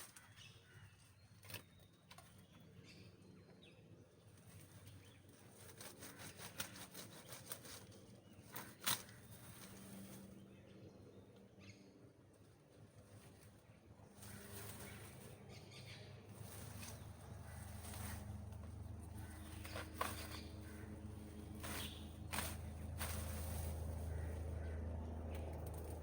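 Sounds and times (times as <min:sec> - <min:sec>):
rustling of grass and brush: 0:04.2 - 0:10.5, 0:12.6 - 0:24.8.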